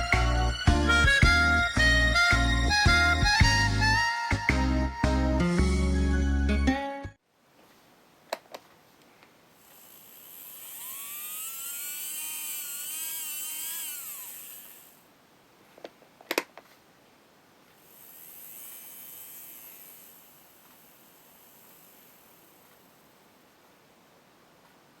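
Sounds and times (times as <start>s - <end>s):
model train motor whine: 9.6s - 15.0s, 17.8s - 23.1s.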